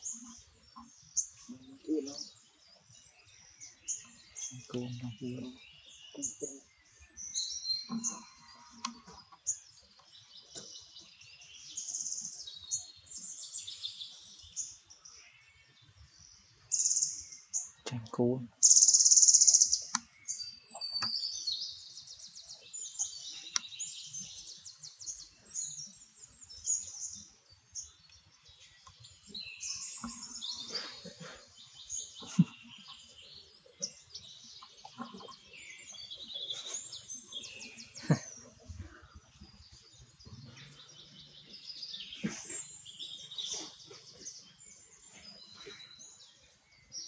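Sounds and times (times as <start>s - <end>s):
small birds chirping: 0.0s - 47.0s.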